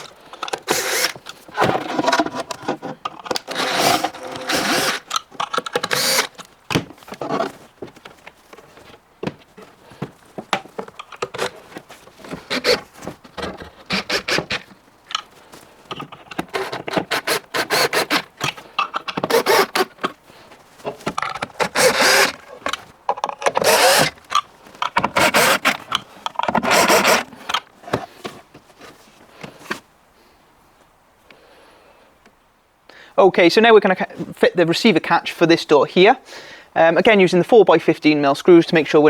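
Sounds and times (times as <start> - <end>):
power tool motor bursts: 0.0 - 2.0, 3.4 - 6.3, 12.5 - 12.8, 13.9 - 14.6, 16.5 - 18.3, 19.2 - 19.9, 21.6 - 22.4, 23.6 - 24.2, 25.1 - 25.8, 26.6 - 27.3.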